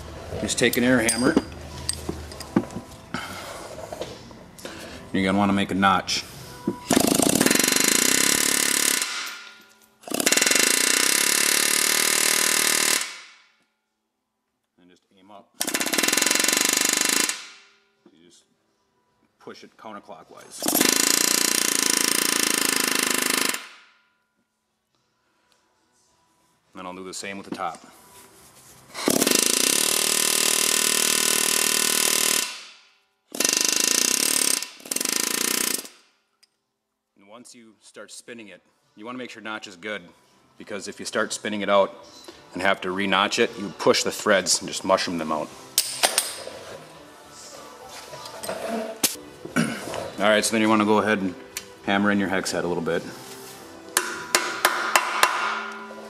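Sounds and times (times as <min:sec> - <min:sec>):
pneumatic air hammer chattering: 0:06.8 - 0:13.2, 0:15.6 - 0:17.5, 0:20.6 - 0:23.7, 0:29.0 - 0:32.7, 0:33.3 - 0:36.0.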